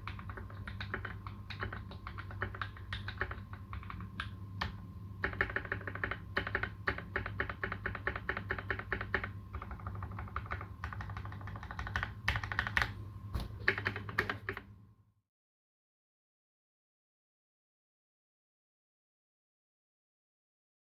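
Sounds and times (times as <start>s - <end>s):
mechanical keyboard typing: 0.0s - 14.7s.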